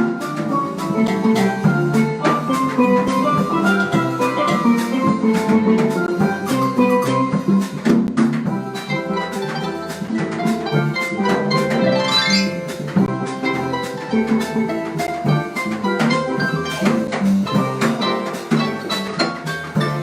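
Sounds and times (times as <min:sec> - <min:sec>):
percussion: 0:00.0 - 0:20.0
plucked harp notes: 0:10.6 - 0:13.8.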